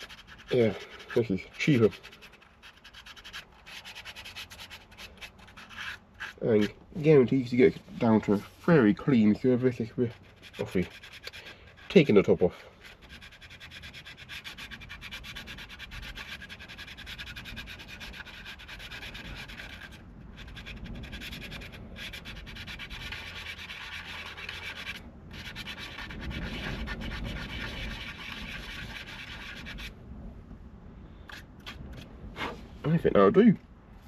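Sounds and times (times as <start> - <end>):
sandpaper rubbing back and forth: 0.0 - 29.9.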